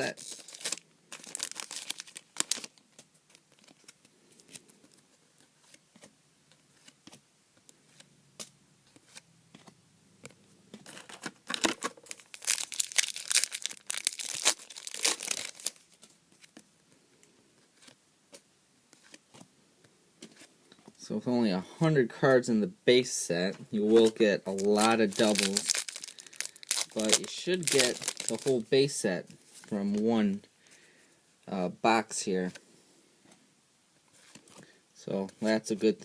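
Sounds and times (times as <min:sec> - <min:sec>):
card pack wrappers tearing: 0:00.0 - 0:04.7, 0:10.8 - 0:16.5, 0:24.0 - 0:28.6
cards clicking and rustling: 0:07.9 - 0:16.7, 0:23.9 - 0:28.6.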